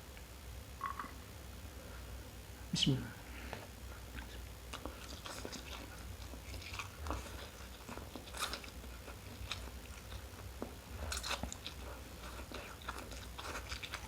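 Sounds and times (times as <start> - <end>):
close chewing with mouth clicks: 3.5 - 14.0.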